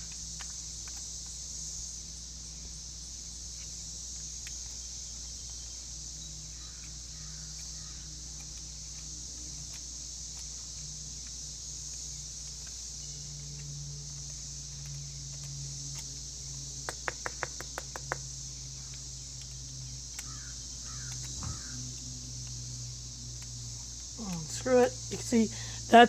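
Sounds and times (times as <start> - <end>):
light clicks: 0.0 - 1.4, 6.7 - 26.0
steady high hiss: 0.0 - 26.0.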